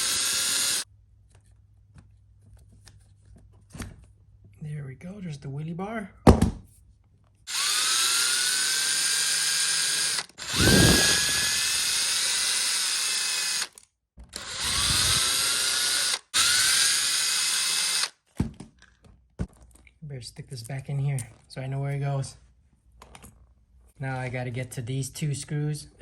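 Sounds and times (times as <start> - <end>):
cordless drill whining: 0.0 - 0.9, 7.5 - 18.2.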